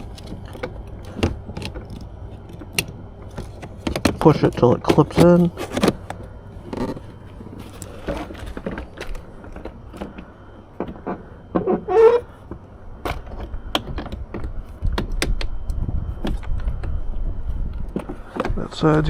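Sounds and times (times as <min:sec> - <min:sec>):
plastic squeak: 0:11.0 - 0:12.3.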